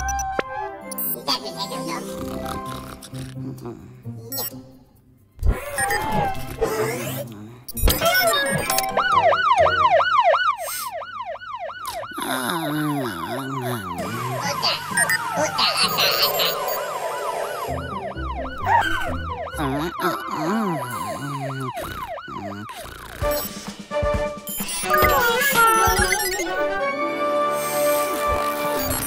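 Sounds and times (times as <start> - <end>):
cartoon siren wailing: 7.9 - 23.5, 24.7 - 26.7.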